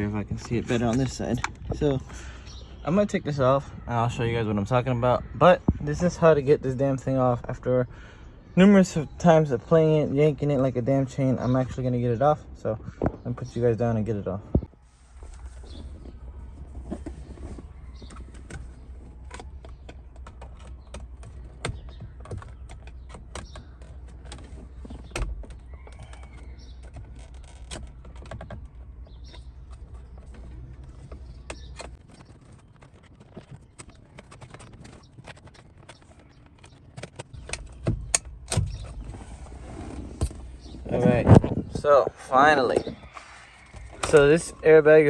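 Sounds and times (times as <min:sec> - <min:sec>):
plastic and metal rattles: 0:00.0 - 0:03.5, 0:14.4 - 0:39.6.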